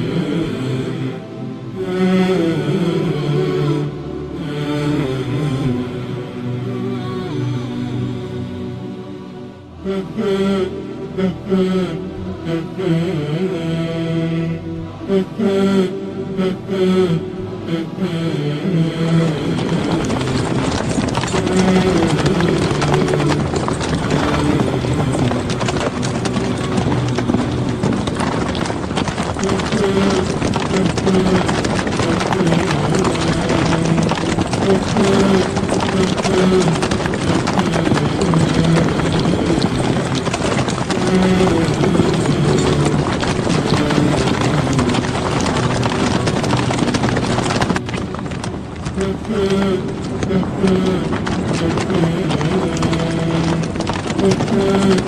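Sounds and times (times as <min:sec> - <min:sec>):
low chanting voices: 0:00.0 - 0:55.0
horses hooves clattering: 0:17.7 - 0:55.0.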